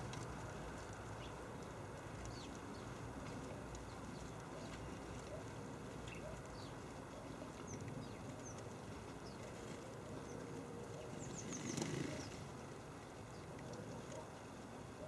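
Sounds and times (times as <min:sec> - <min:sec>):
birds chirping: 0:06.0 - 0:12.6.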